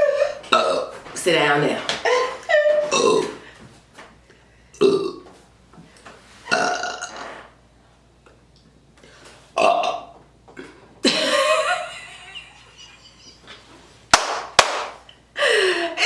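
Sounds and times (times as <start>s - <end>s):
person burping loudly: 0.5s - 1.0s, 2.9s - 3.4s, 4.8s - 5.3s, 6.5s - 7.3s, 9.6s - 10.8s.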